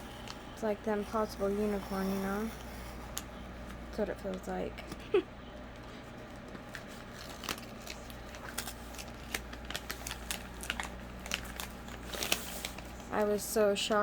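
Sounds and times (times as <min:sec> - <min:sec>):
steady low hum: 0:00.0 - 0:14.0
packaging crinkling: 0:05.7 - 0:14.0.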